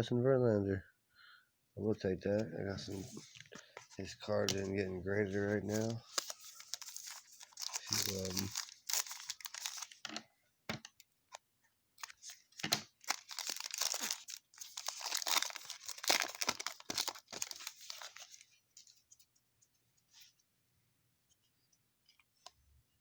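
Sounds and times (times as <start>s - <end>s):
foil wrapper tearing and crinkling: 5.7s - 10.0s, 12.0s - 18.5s.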